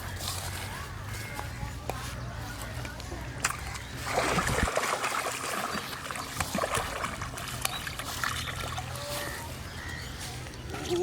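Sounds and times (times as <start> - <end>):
water trickling and splashing: 3.3 - 11.0.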